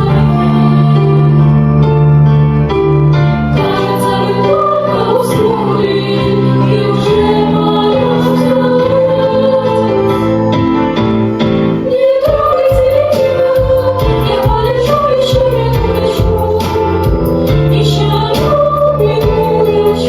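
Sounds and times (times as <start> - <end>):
held chord accompaniment: 0.0 - 20.0
voices singing: 3.5 - 10.6, 11.8 - 20.0.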